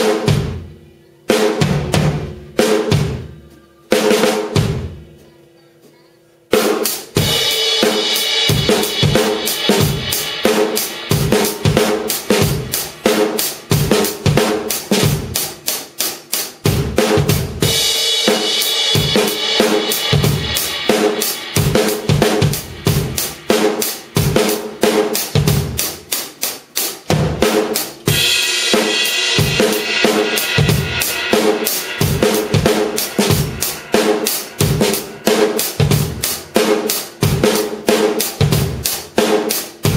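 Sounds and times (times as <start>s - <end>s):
drum kit groove: 0.0s - 5.2s, 6.5s - 39.9s
cymbals ringing in a wash: 28.1s - 38.5s.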